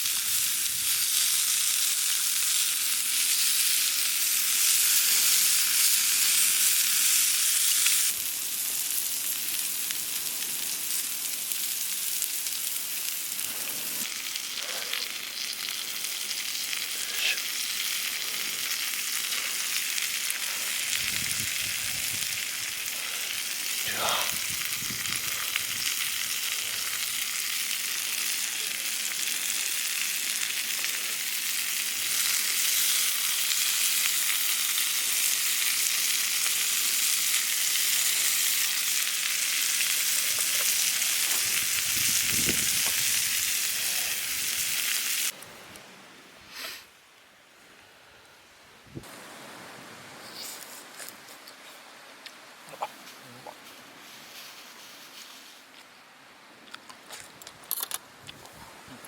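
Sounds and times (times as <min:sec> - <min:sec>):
food sizzling in a pan: 0:00.0 - 0:45.4.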